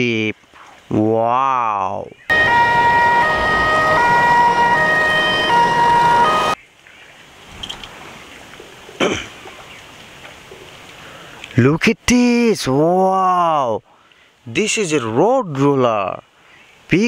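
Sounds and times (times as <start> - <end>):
electronic siren tones: 2.3 - 6.6.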